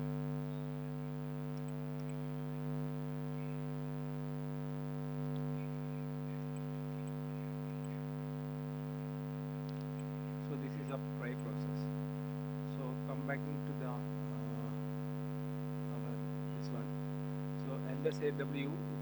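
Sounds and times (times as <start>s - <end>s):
electrical mains hum: 0.0s - 19.0s
faint voice: 5.5s - 8.5s.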